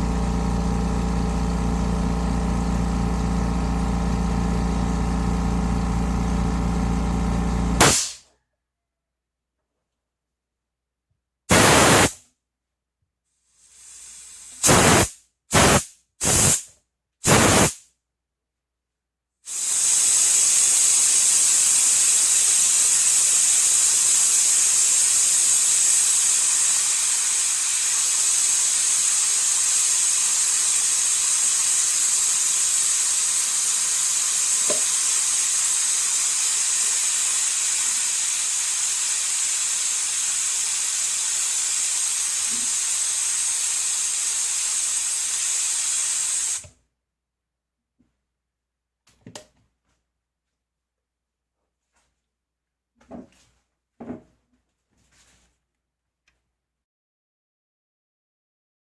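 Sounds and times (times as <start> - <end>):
compressed air hissing from nozzle: 7.8 - 8.2, 11.5 - 12.2, 13.4 - 17.8, 19.5 - 46.7.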